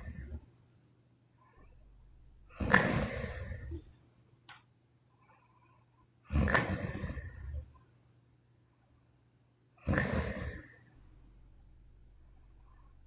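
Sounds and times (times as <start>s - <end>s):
woman snoring: 2.5s - 3.9s, 9.9s - 10.9s.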